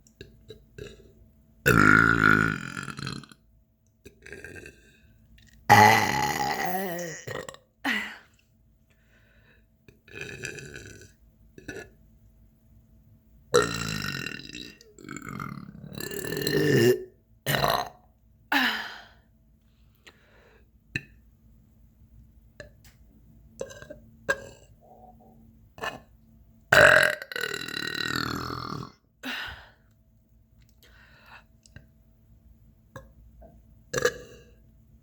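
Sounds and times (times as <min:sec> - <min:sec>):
woman burping: 0:05.7 - 0:08.3, 0:11.6 - 0:12.0, 0:13.6 - 0:19.1, 0:23.6 - 0:26.0, 0:33.9 - 0:34.5.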